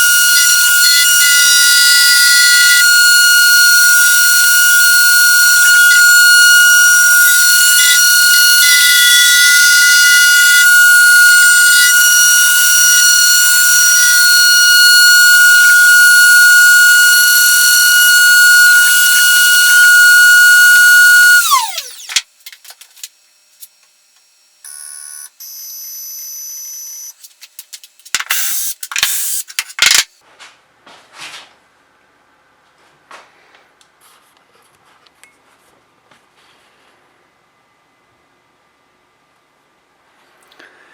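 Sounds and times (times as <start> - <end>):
machine spindle whining: 0.0 - 22.2.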